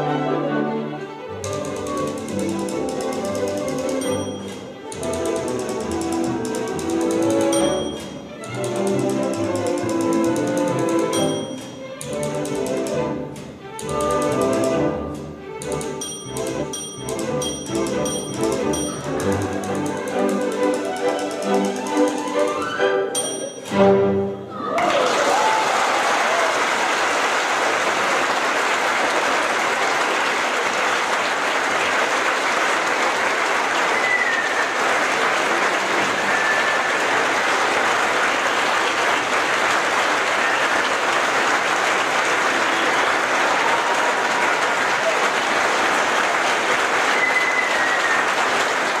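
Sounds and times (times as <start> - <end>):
audience applauding: 24.6 - 49.0
high whistle-like tones: 33.8 - 35.0, 36.0 - 37.2, 47.1 - 48.4.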